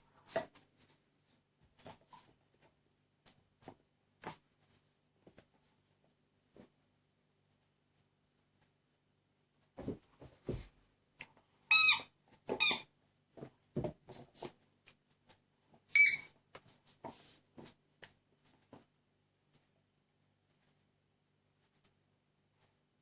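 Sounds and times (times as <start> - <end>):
squeaky dog toy squeaking: 11.7 - 12.9, 15.9 - 16.4.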